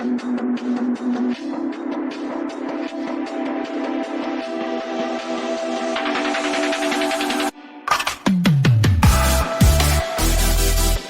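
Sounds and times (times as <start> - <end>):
electronic dubstep music: 0.0 - 11.0.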